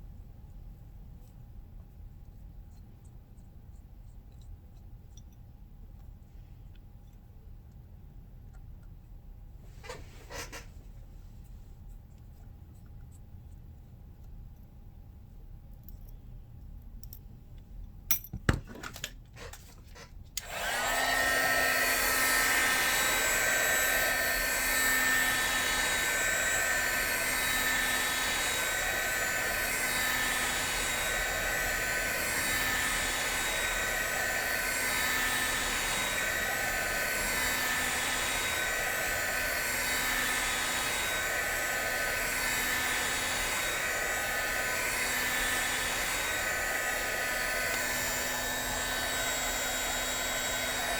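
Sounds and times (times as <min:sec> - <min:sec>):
hot-air blower whining: 0:09.7 - 0:11.0, 0:18.7 - 0:50.9.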